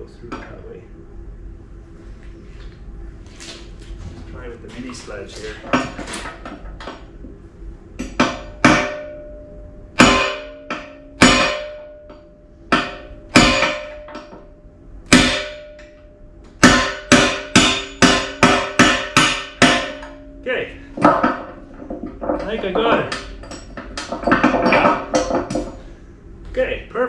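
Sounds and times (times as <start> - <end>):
sledgehammer striking steel: 8.0 - 14.5, 15.1 - 25.9.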